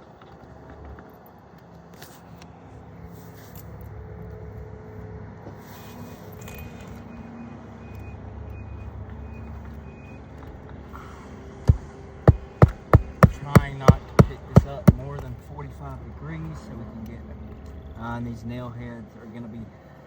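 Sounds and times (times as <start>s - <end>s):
low engine rumble: 0.0s - 19.9s
hammer striking nail: 11.7s - 15.1s.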